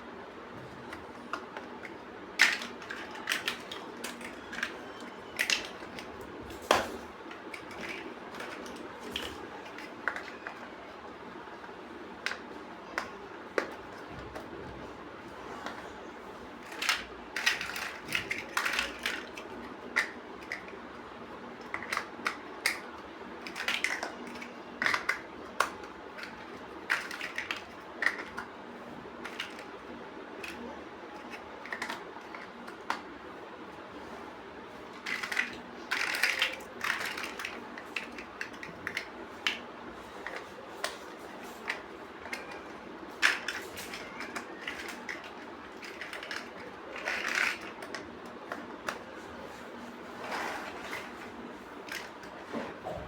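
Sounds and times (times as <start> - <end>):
plastic bricks clicking: 0.9 - 6.1, 16.6 - 20.8, 21.6 - 28.5, 29.2 - 29.8, 30.4 - 33.1, 35.0 - 39.6, 40.2 - 49.0.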